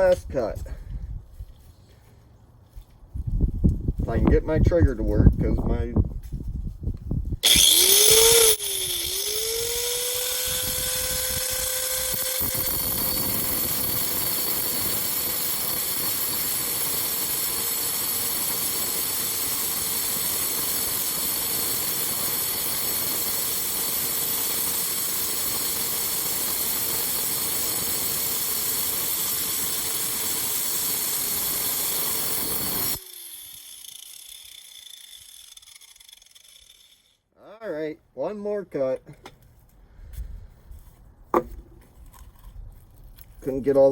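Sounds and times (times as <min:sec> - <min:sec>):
angle grinder cutting stone: 0:07.4 - 0:37.3.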